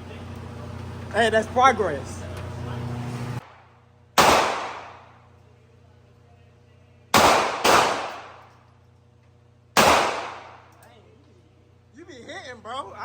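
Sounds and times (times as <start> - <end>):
gunshots with ringing decay: 3.4 - 5.2, 7.1 - 8.5, 9.8 - 10.7.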